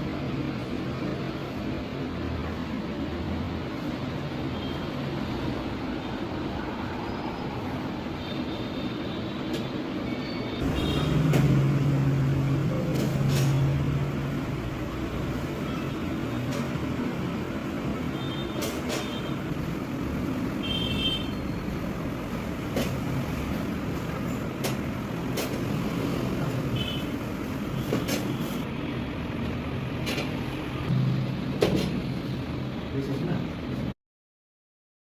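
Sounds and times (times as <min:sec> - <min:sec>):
low traffic rumble: 0:00.0 - 0:33.9.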